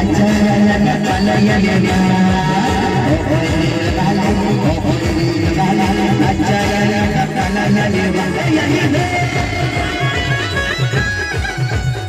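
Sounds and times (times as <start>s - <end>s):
band playing dance music: 0.0s - 12.0s.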